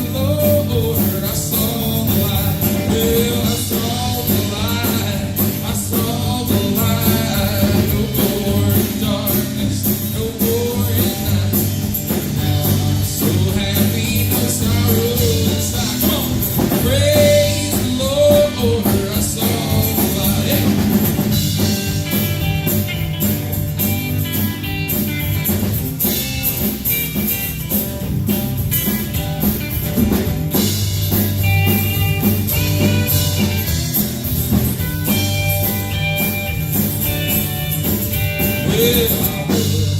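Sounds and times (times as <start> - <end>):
person singing: 0.0 - 21.2, 38.5 - 39.9
drum kit: 0.0 - 39.9
guitar: 0.0 - 39.9.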